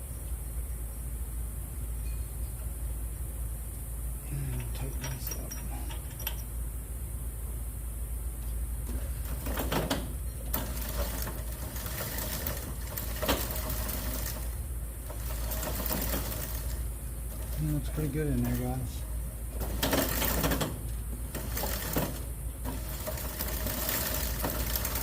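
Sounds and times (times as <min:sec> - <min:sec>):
metal chain clicking and clinking: 0:04.5 - 0:06.5.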